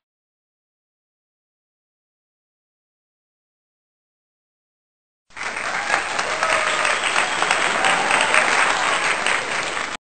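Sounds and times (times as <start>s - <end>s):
crowd applauding: 5.3s - 10.0s.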